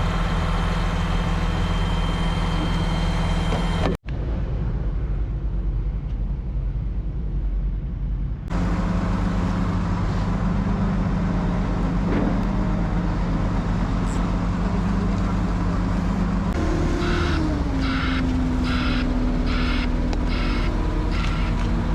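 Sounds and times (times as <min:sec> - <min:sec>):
diesel engine running: 0:00.0 - 0:21.9
pulsing hiss: 0:17.8 - 0:21.9.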